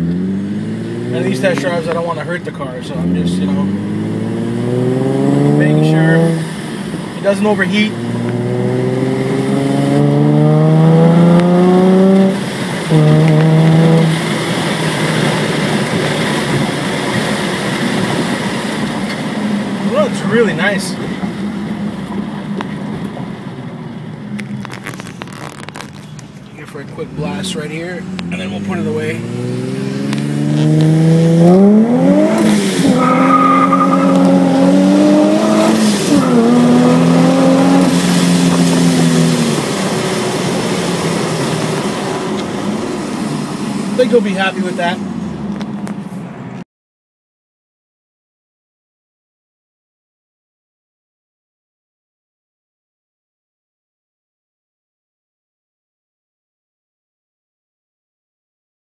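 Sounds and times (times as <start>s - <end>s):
car engine accelerating: 0.0s - 46.6s
road noise inside car: 0.0s - 46.6s.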